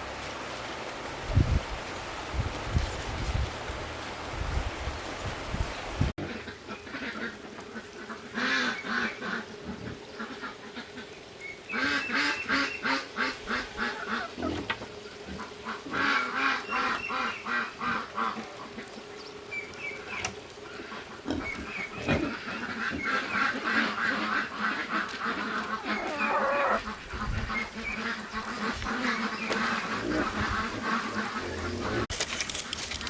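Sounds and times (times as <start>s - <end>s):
ducks quacking: 6.2s - 11.1s, 11.7s - 19.1s, 20.6s - 32.1s.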